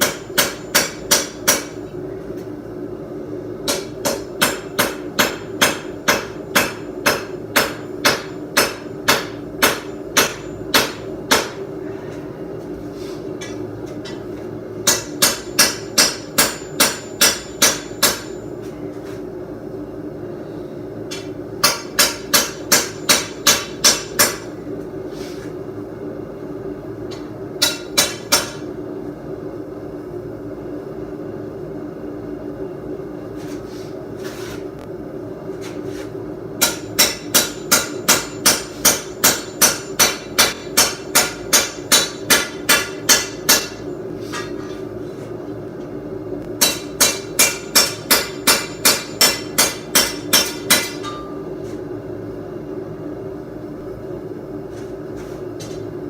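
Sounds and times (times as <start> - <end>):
hammer striking steel on anvil: 0.0 - 1.9, 3.6 - 11.7, 13.4 - 18.5, 21.1 - 24.6, 27.1 - 28.7, 36.6 - 44.8, 46.6 - 51.5
forge humming: 0.0 - 56.0.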